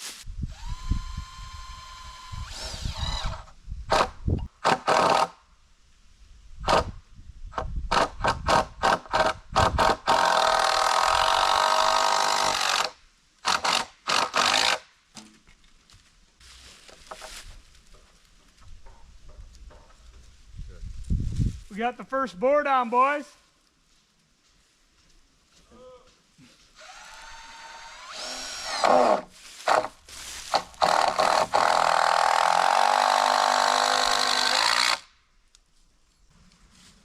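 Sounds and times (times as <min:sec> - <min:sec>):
power drill driving screws into wood: 0:00.5 - 0:05.4, 0:06.6 - 0:07.0, 0:07.9 - 0:14.9, 0:26.8 - 0:35.2.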